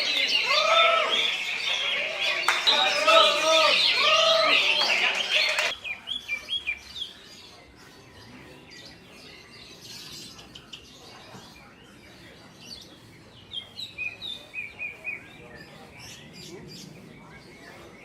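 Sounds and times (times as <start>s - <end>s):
faint background hubbub: 0.0s - 18.0s
songbirds chirping: 0.0s - 18.0s.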